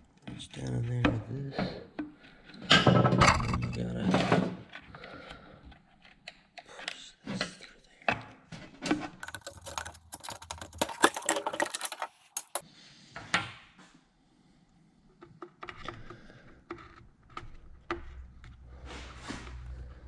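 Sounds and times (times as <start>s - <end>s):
small parts clicking and rattling: 9.2s - 12.6s.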